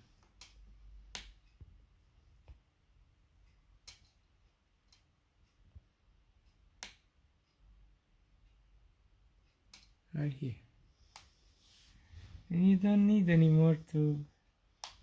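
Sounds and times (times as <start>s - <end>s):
faint sharp clicks of charging cable: 14.8s - 15.0s.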